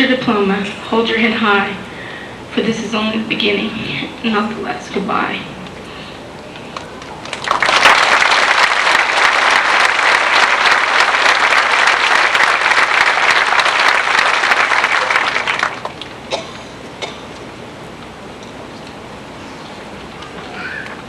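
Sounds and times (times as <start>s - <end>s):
audience applauding: 6.6s - 16.2s.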